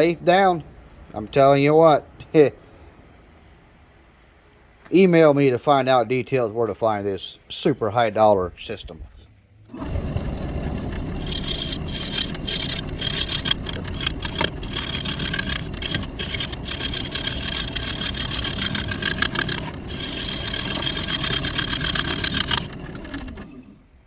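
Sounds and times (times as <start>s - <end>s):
lathe tool hissing cut: 9.7s - 24.0s
wood lathe rumble: 9.7s - 24.0s.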